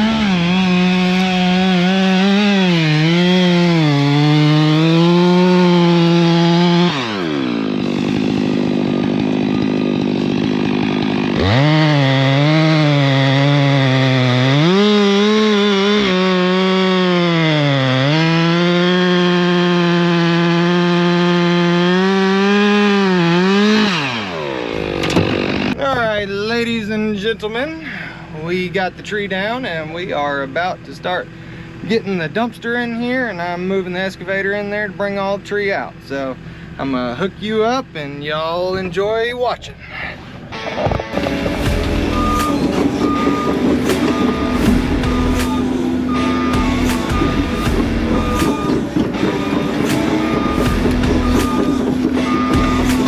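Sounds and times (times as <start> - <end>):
chainsaw cutting wood: 0.0 - 25.8, 40.4 - 53.0.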